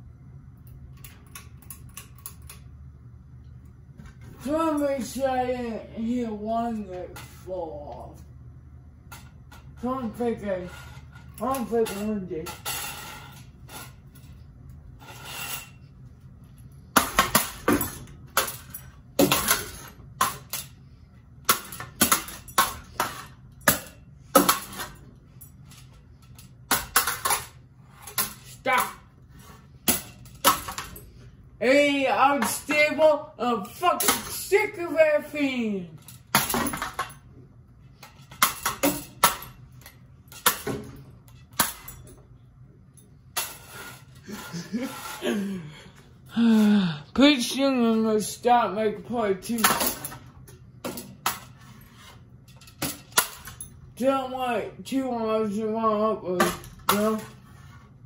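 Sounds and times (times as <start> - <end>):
metal parts banging and clinking: 0.7 - 2.7, 9.0 - 31.2, 36.0 - 45.3, 49.4 - 54.1.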